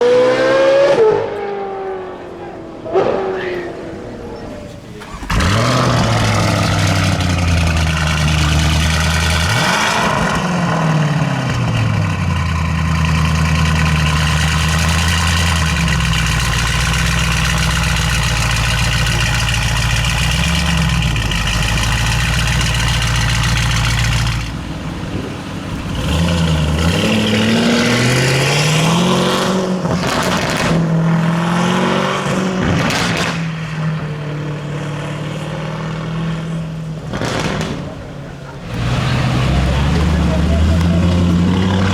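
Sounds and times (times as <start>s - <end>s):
car engine revving: 0.0s - 41.9s
exhaust crackles and pops: 4.7s - 27.1s, 36.0s - 41.9s.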